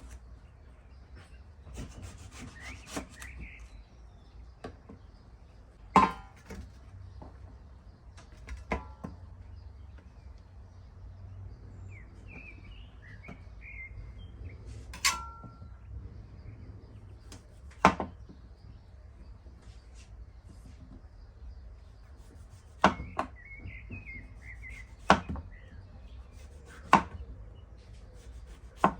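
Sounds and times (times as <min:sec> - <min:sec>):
birds chirping: 0:00.0 - 0:28.9
utensils clinking against dish: 0:15.0 - 0:15.6.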